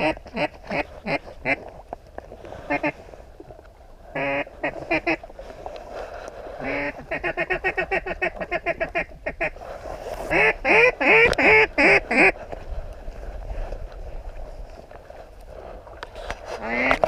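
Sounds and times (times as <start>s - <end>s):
duck quacking: 2.7s - 3.0s, 4.2s - 5.2s, 6.6s - 9.5s, 10.3s - 12.4s, 16.6s - 17.0s.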